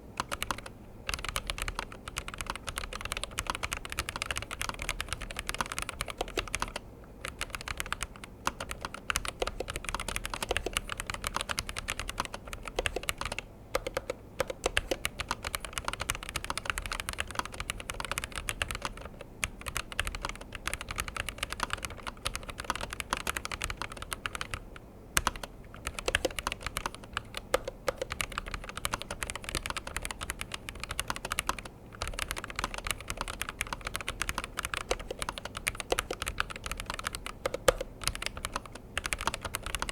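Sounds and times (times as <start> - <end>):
fast keyboard typing: 0.0 - 39.9.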